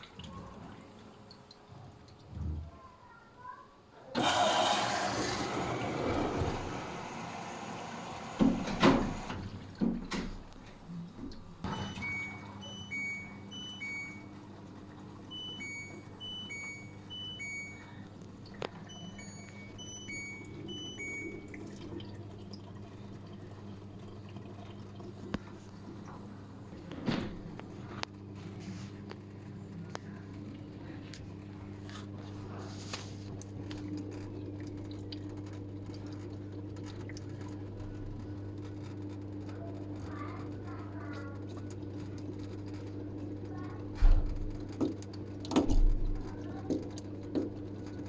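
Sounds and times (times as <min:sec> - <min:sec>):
washing machine humming: 0:00.0 - 0:48.0
short electronic beeps: 0:18.9 - 0:21.4.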